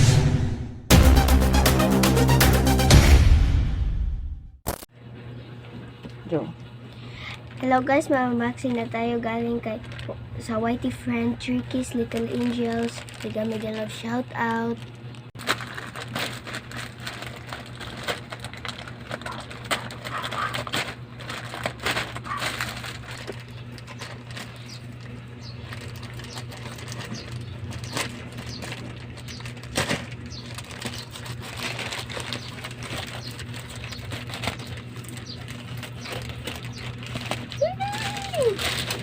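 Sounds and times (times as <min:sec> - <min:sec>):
packaging being handled and opened: 0:11.7 - 0:39.0.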